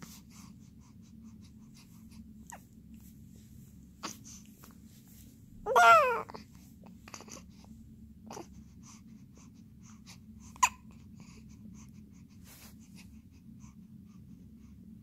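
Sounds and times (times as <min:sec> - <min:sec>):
faint baby breathing: 0:00.0 - 0:02.7, 0:03.5 - 0:14.8
baby hiccuping: 0:05.7 - 0:06.3.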